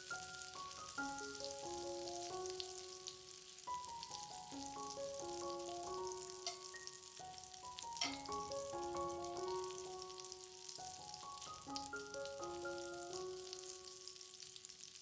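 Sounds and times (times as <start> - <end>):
background music: 0.0 - 14.4
food sizzling in a frying pan: 0.0 - 15.0.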